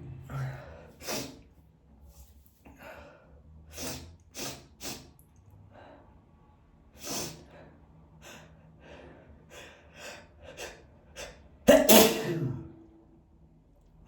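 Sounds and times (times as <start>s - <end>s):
loud sneeze: 1.0s - 1.4s, 11.7s - 12.9s.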